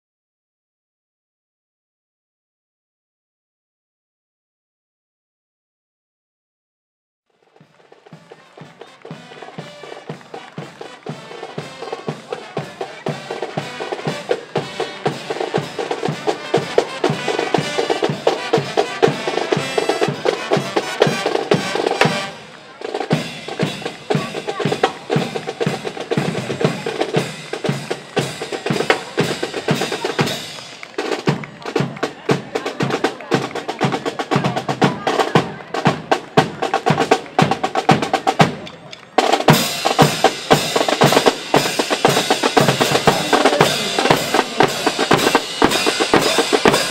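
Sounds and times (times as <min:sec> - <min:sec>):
snare drums: 0:07.4 - 0:46.9
bass drums: 0:23.0 - 0:38.7, 0:39.4 - 0:46.9.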